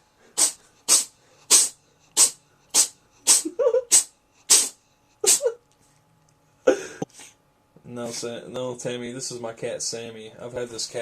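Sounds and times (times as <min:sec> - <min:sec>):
cat sneezing: 0:00.3 - 0:05.6.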